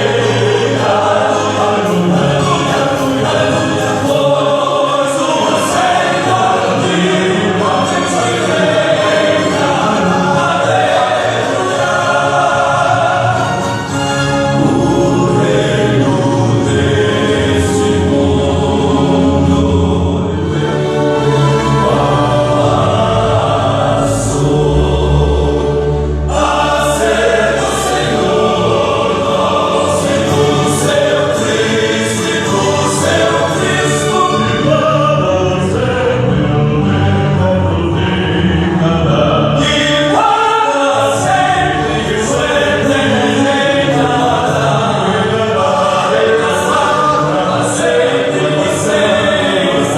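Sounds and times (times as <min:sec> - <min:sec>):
vocal quartet singing in harmony: 0:00.0 - 0:49.9.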